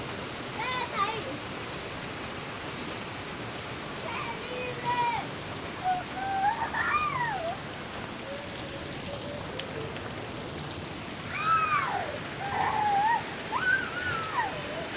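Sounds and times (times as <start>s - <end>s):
running water: 0.0s - 14.9s
steady rain: 0.0s - 14.9s
high-pitched cries: 5.8s - 7.6s, 11.2s - 14.9s.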